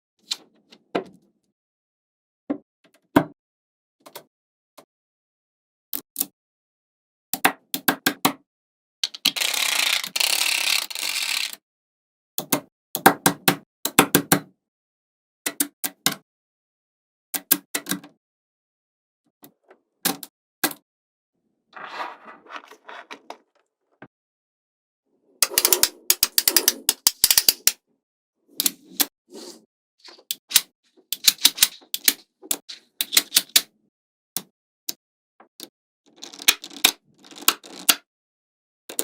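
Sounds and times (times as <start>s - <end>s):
magnetic balls clicking together: 25.4s - 27.8s.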